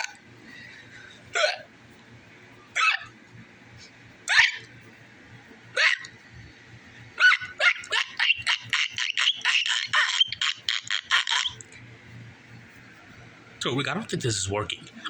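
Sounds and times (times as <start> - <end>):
squeaky hiccups: 1.4 - 1.7, 2.7 - 3.2, 4.3 - 4.7, 5.8 - 6.1, 7.2 - 11.6.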